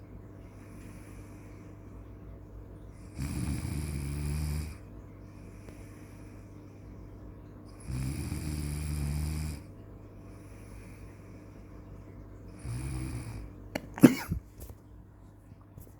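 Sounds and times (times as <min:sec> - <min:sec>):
snoring: 0:03.0 - 0:04.8, 0:07.8 - 0:09.7, 0:12.6 - 0:13.5.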